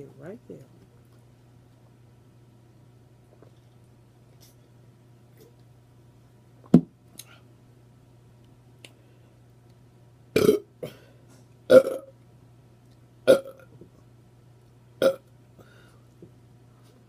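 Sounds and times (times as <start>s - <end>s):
woman burping: 10.4s - 11.0s, 11.7s - 12.1s, 13.3s - 13.6s.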